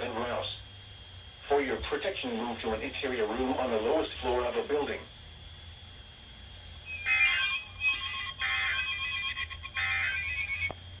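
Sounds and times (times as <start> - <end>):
digital data tone bursts: 6.8 - 10.7
steady electronic tone: 6.8 - 10.7.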